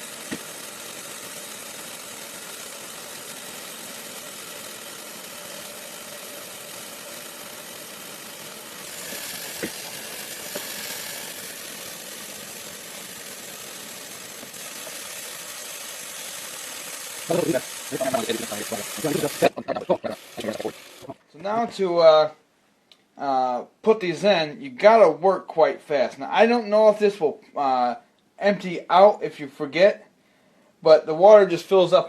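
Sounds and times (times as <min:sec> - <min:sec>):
water running from a tap: 0:12.2 - 0:19.5, 0:20.1 - 0:21.1.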